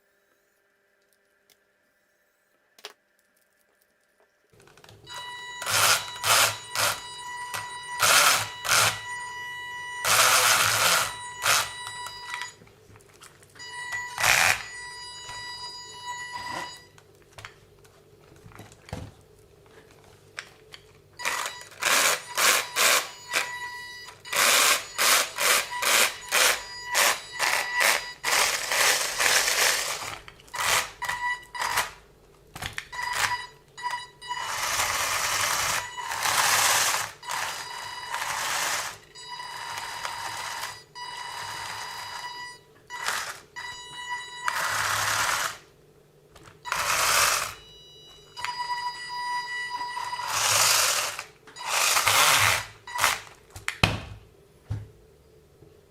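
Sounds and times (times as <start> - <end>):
toy car motor whine: 5.1 - 12.5, 13.6 - 15.4, 21.2 - 32.0, 34.2 - 45.7, 46.7 - 47.7, 49.7 - 53.3.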